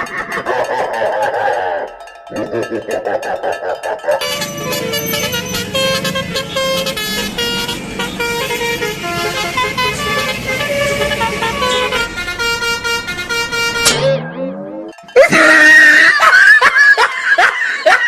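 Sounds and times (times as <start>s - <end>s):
bus multi-tone melody horn: 4.2s - 14.6s.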